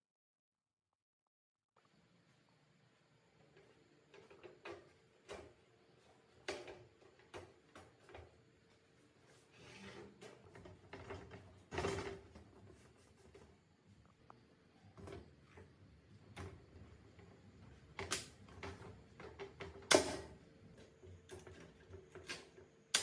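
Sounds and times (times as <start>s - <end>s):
short scrape: 9.3s - 10.2s.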